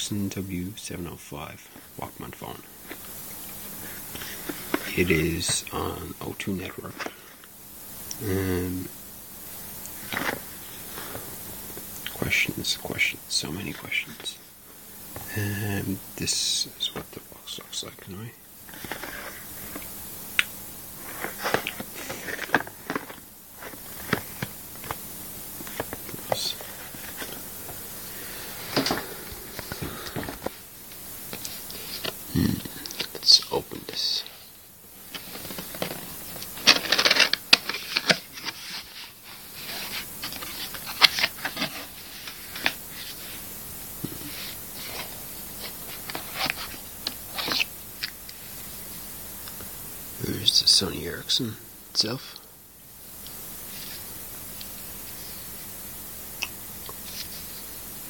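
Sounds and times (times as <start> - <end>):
packaging rustling and scraping: 18.7 - 19.9, 21.0 - 30.7, 31.3 - 32.3, 35.0 - 43.5, 44.2 - 47.7.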